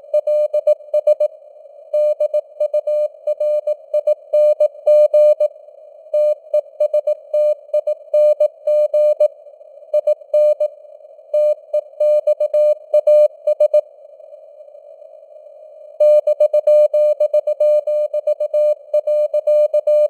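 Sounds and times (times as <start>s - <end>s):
morse code beeps: 16.0s - 20.0s.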